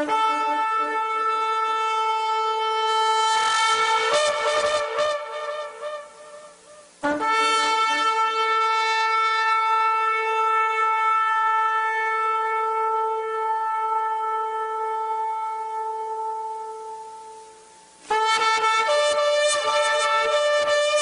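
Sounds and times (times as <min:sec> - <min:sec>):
ram's horn blast: 0:00.0 - 0:21.0.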